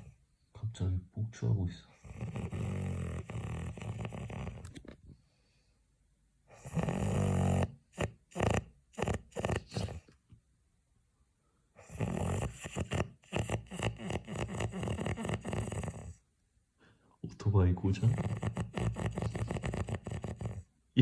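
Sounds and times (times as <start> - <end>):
person snoring loudly: 2.0 - 4.7, 6.6 - 10.0, 11.8 - 16.2, 18.0 - 20.6
short choppy snorts: 6.6 - 10.1, 11.8 - 16.2.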